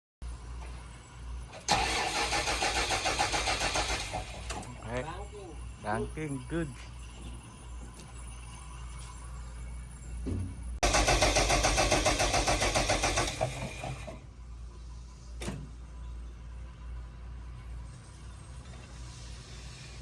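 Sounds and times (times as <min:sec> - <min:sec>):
starter motor cranking engine: 0:01.5 - 0:04.9, 0:10.8 - 0:14.2.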